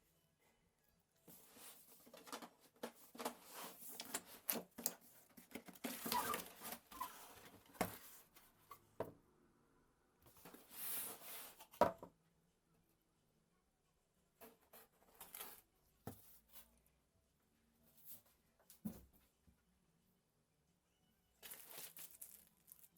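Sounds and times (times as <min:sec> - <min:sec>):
packaging rustling: 0:21.4 - 0:22.9.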